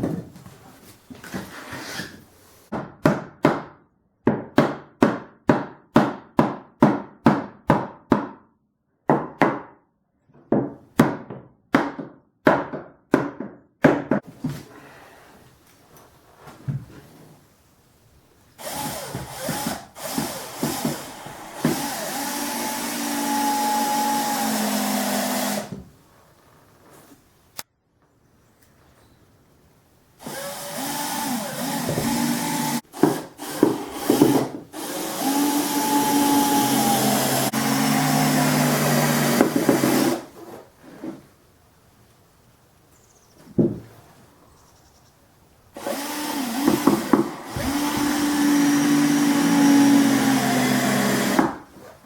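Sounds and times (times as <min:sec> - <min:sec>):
power tool running: 0:30.2 - 0:40.2, 0:45.8 - 0:51.4.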